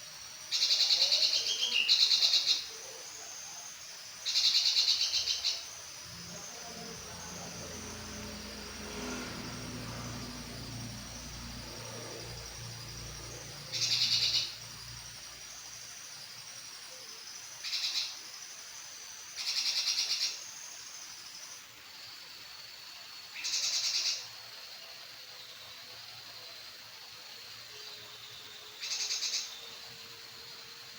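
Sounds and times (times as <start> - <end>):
bird trilled calls: 0.5 - 2.8, 4.2 - 5.7, 13.6 - 14.7, 28.8 - 29.6.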